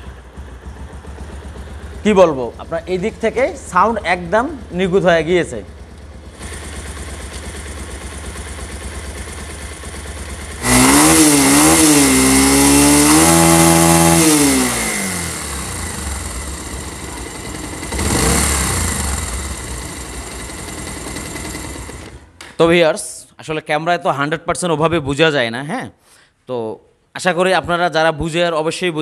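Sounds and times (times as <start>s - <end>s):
motorcycle engine idling and revving: 0.0s - 22.4s.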